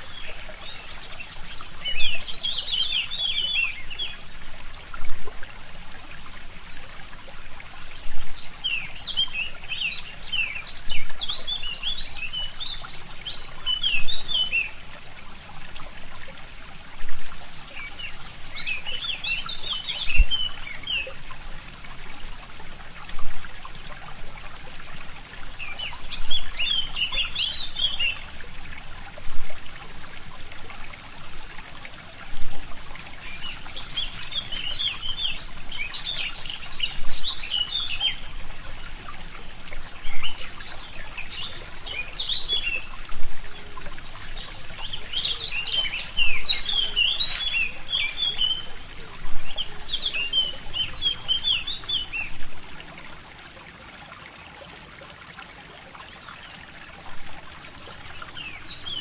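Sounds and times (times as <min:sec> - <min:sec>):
stream trickling: 0:00.0 - 0:59.0
songbird warbling: 0:32.9 - 0:39.0, 0:40.0 - 0:52.5.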